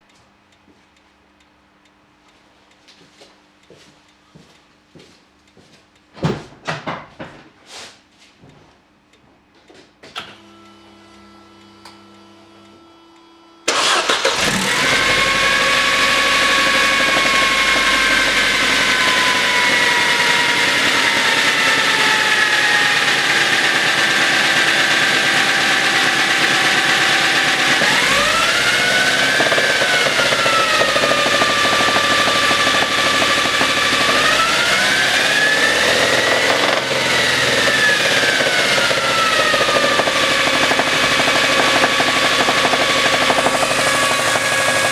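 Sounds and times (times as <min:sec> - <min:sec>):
car engine starting and idling: 0:13.7 - 0:44.9
engine revving: 0:13.7 - 0:44.9.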